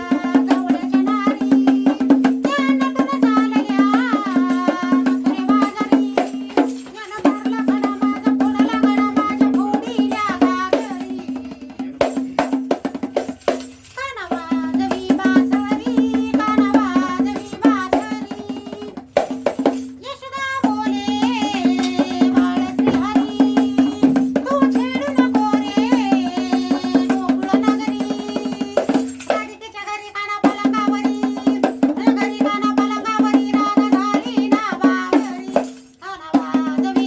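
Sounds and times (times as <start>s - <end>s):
rattling percussion: 0.0s - 37.0s
woman singing: 0.0s - 37.0s.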